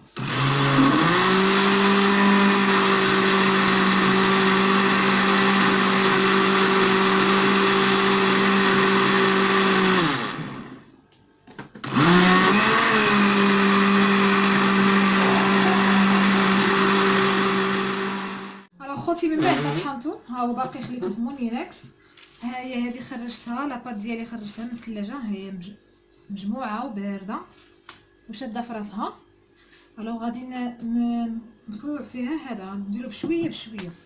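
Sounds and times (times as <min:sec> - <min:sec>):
electric mixer whirring: 0:00.0 - 0:10.9, 0:11.8 - 0:18.7, 0:19.4 - 0:19.9.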